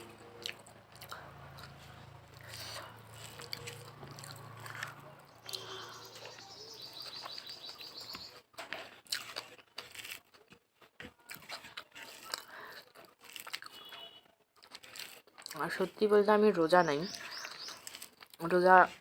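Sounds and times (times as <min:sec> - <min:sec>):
chewing and mouth clicks: 0:00.0 - 0:16.0, 0:17.1 - 0:18.6
bird chirping: 0:05.2 - 0:08.4, 0:16.6 - 0:18.1.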